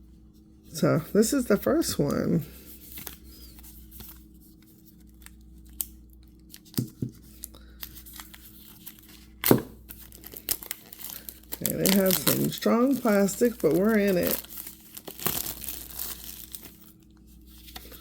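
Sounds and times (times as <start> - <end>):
plastic packaging tearing: 4.9 - 17.0.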